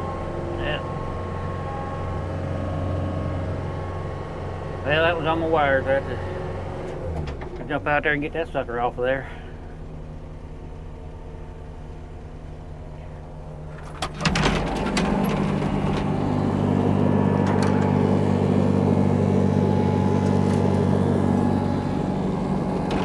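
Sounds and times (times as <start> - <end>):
diesel engine idling: 0.0 - 23.0
sharp clunks: 17.4 - 18.2.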